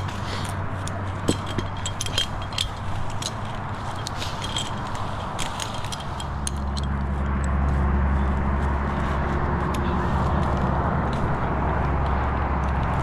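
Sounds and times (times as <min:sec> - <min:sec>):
metal hardware clinking: 0:00.0 - 0:07.5
low engine hum: 0:00.0 - 0:13.0.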